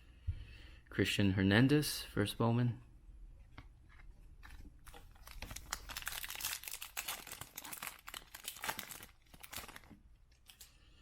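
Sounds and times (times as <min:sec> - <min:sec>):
foil wrapper crinkling and tearing: 0:04.8 - 0:10.7.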